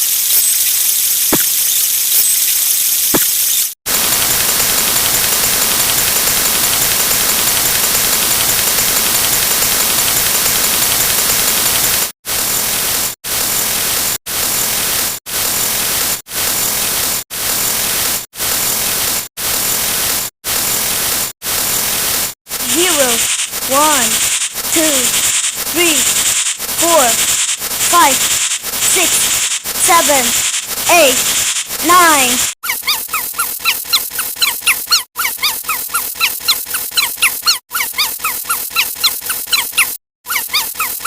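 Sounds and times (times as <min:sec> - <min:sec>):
loud static hiss: 0:22.5 - 0:32.6.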